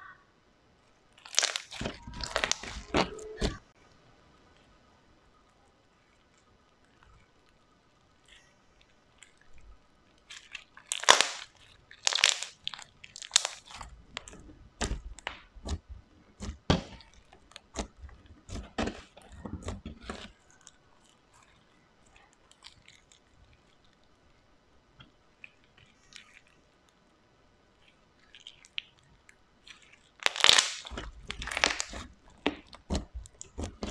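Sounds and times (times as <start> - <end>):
slime crackling and popping: 1.1 - 3.6, 6.1 - 24.4, 27.8 - 33.9.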